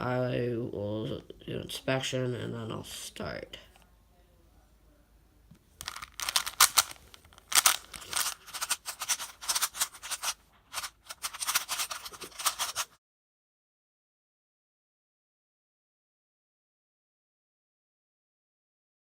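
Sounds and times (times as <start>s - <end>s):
plastic speed cube clacking: 5.8s - 12.9s.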